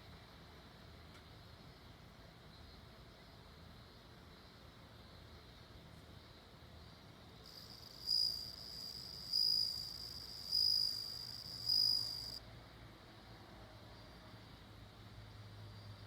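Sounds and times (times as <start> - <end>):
cricket singing: 7.5 - 12.4.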